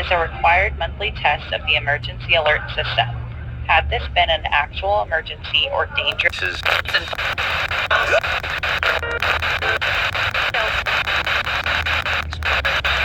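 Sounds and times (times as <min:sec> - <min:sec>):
faint voice reading announcement: 0:00.0 - 0:08.4, 0:10.4 - 0:10.9
radio static crackling: 0:00.0 - 0:13.0.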